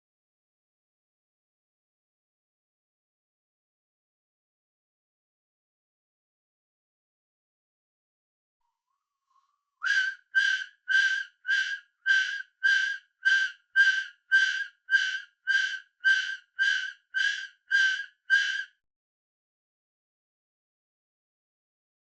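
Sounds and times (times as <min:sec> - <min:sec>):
breathy failed whistling: 0:09.3 - 0:18.8.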